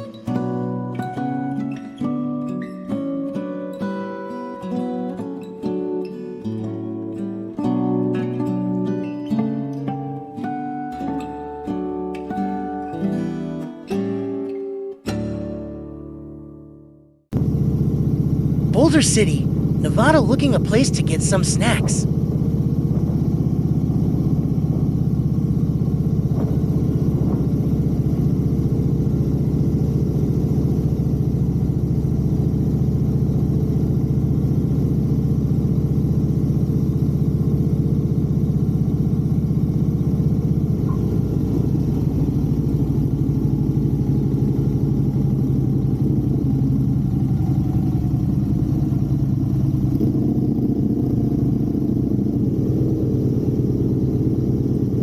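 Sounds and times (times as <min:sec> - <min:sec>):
motorcycle engine running: 0:17.3 - 0:55.0
road and wind noise: 0:17.4 - 0:55.0.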